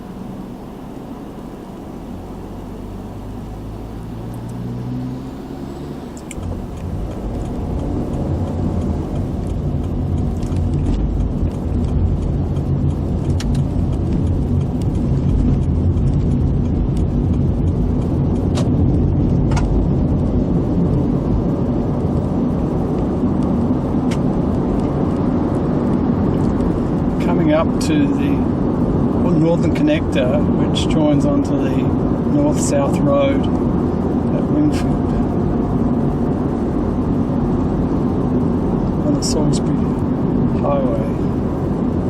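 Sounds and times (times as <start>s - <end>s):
car engine and tyre drone: 0.0s - 42.0s.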